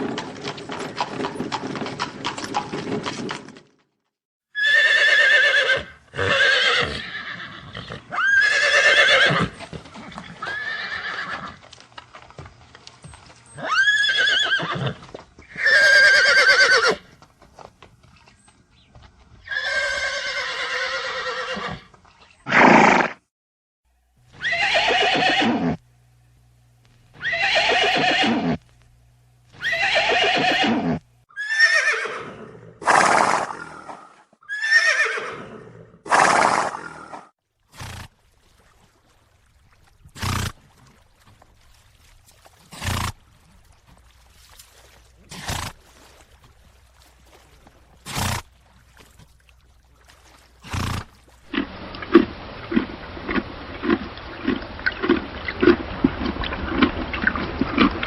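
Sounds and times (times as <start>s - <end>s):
horses whinnying: 4.6s - 11.6s, 13.5s - 17.1s, 19.4s - 21.9s, 24.4s - 25.8s, 27.2s - 28.6s, 29.6s - 37.2s.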